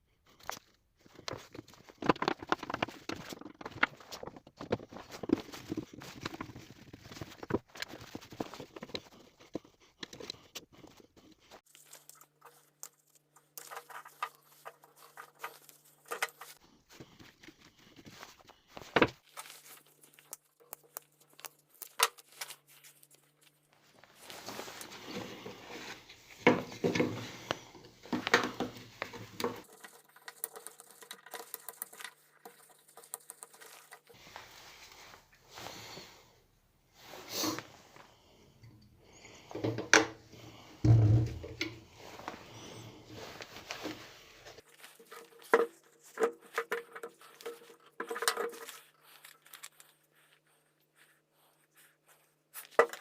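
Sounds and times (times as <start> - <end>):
scraping and rattling: 1.1 - 10.3.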